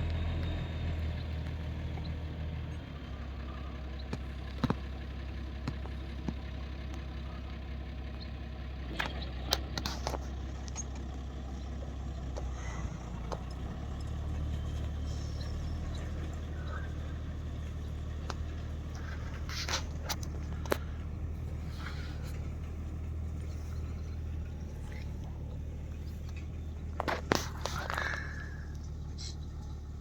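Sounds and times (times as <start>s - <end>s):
tractor engine running: 0.0s - 30.0s.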